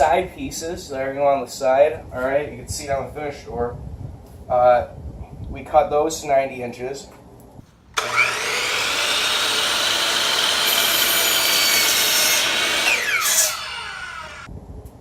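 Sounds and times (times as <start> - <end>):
electric saw cutting wood: 8.0 - 14.5.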